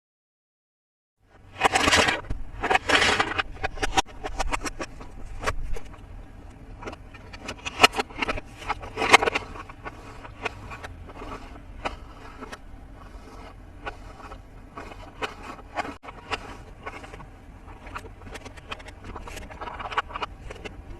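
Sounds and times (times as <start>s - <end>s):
small clicks and scrapes: 1.3s - 20.9s
toy packaging rustling: 6.8s - 20.9s.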